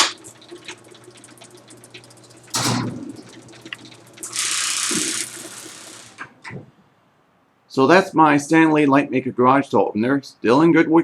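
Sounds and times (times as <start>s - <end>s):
garage door opener motor hum: 0.0s - 6.6s
steady hiss: 4.2s - 6.3s.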